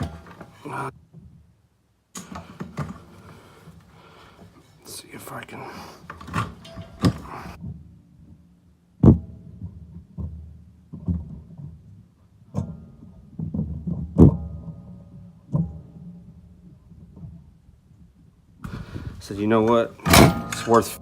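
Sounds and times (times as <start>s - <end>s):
knocks and thuds of wheel: 0.0s - 0.8s, 20.0s - 21.0s.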